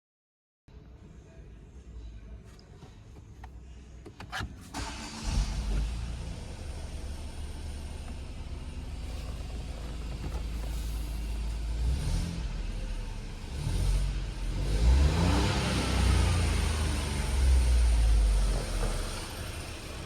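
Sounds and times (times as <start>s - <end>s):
car engine running and revving: 4.8s - 20.0s.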